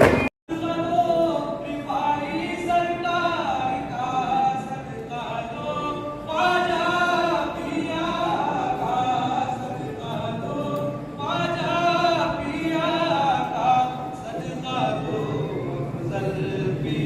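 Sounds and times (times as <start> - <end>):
unaccompanied devotional singing: 0.5 - 17.0.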